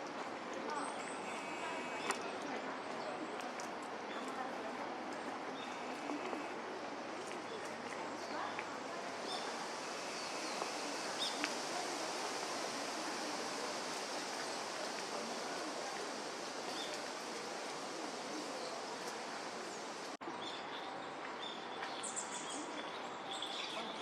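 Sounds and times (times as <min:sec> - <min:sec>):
outdoor background hiss: 0:00.7 - 0:02.8, 0:04.4 - 0:20.4.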